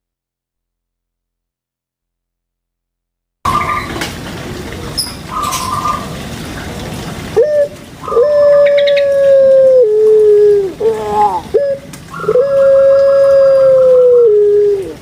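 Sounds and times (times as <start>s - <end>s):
higher dove coos: 3.5s - 15.0s
dove long call: 5.2s - 15.0s.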